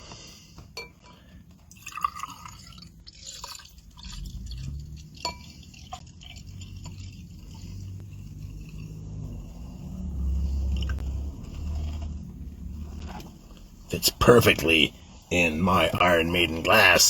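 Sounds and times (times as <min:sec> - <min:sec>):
soda pouring into glass: 0:01.7 - 0:07.4.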